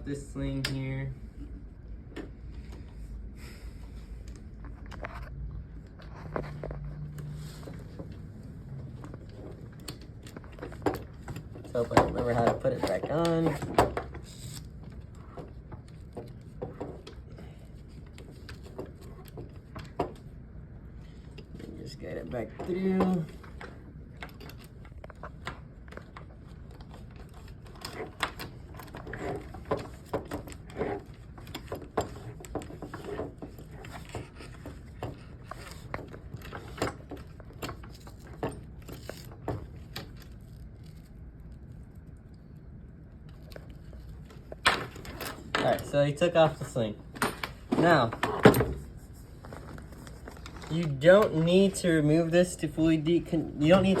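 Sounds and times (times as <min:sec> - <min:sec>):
rifle sling clicks and rustles: 0:09.0 - 0:17.2.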